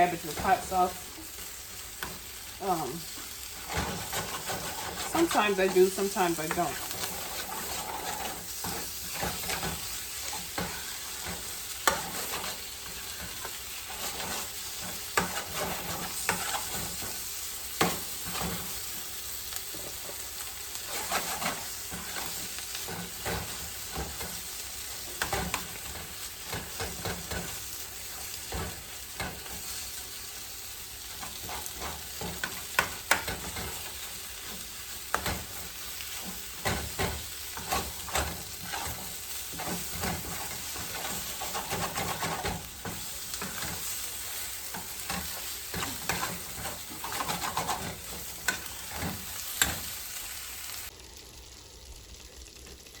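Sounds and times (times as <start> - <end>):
cabbage sizzling in a pan: 0.0 - 53.0
utensil scraping a pan: 1.9 - 18.8, 19.7 - 24.4, 31.1 - 50.0.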